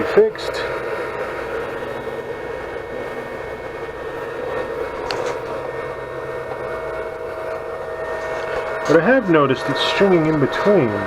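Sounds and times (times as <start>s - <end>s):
printer fans and motors whirring: 0.0s - 11.0s.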